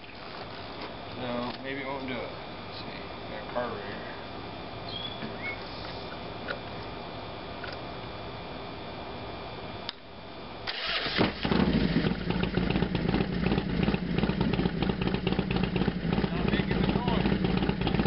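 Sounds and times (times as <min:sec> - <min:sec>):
motorcycle engine idling unevenly: 0:11.4 - 0:18.0.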